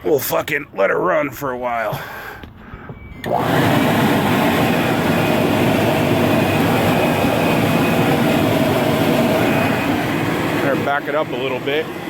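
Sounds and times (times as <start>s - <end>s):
faint motor whine: 2.4s - 12.0s
air blower rushing: 3.2s - 12.0s.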